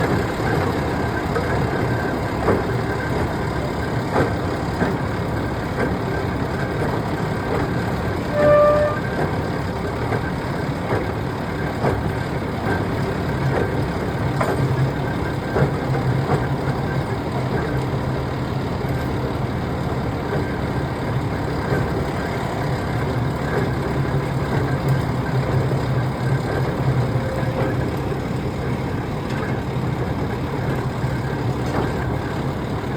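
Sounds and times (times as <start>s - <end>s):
diesel engine running: 0.0s - 32.9s
machinery clicks and knocks: 0.0s - 32.9s
short beep: 8.3s - 9.1s.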